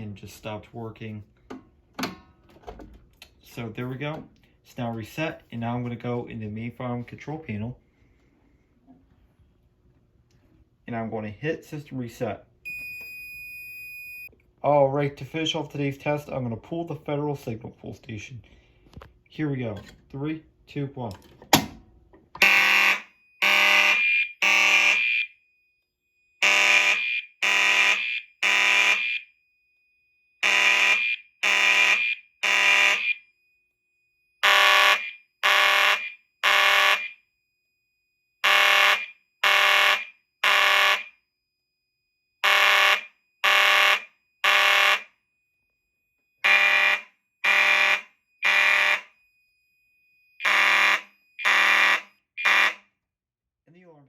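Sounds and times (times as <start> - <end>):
fire alarm horns blasting: 22.4 - 37.4, 38.3 - 41.7, 42.3 - 53.0.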